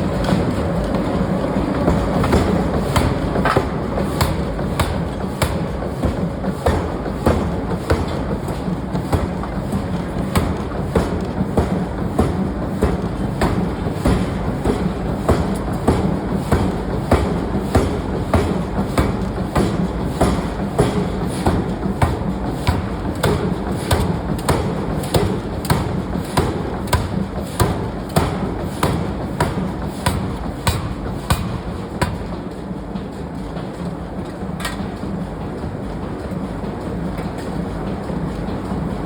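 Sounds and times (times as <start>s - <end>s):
constant machine hum: 0.0s - 39.0s
power hammer striking steel: 1.9s - 8.1s, 16.6s - 32.4s.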